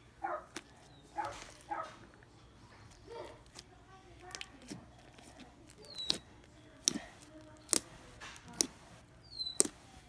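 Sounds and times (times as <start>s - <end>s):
slime popping clicks: 6.8s - 10.0s.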